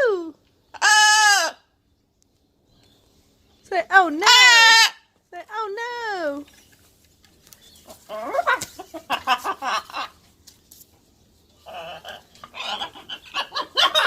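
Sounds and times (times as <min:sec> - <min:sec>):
parrot chattering and squawking: 0:11.6 - 0:14.0.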